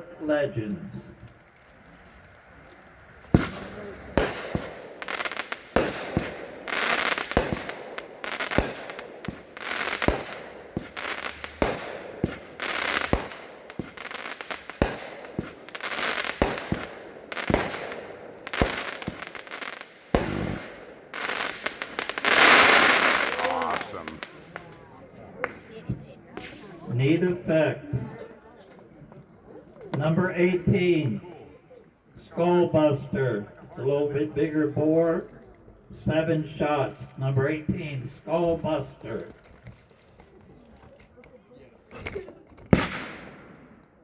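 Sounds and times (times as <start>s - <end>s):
firework launch reports: 2.9s - 27.9s
firework shells crackling bang: 3.0s - 24.7s, 42.6s - 44.0s.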